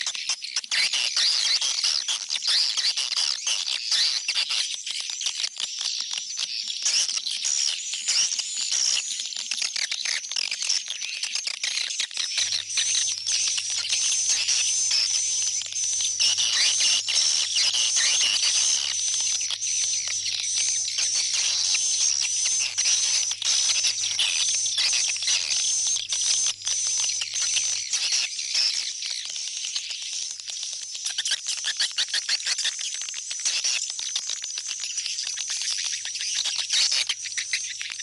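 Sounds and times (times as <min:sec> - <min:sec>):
swiftlet chirping chorus: 0:12.4 - 0:29.4.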